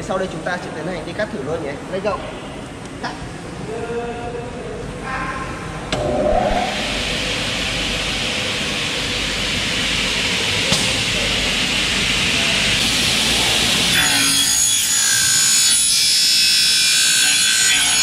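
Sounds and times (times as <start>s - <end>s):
saw whine of high tones: 6.0s - 8.5s
saw cutting aluminium: 12.8s - 18.0s.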